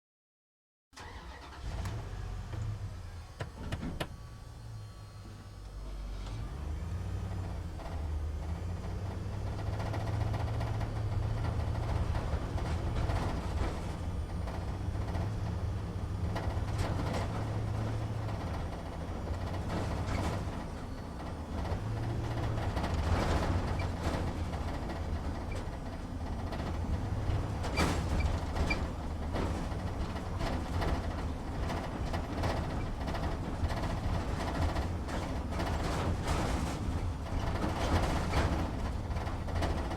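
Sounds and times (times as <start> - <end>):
truck engine drone: 1.0 - 39.9
cab rattling and knocking: 21.5 - 39.9.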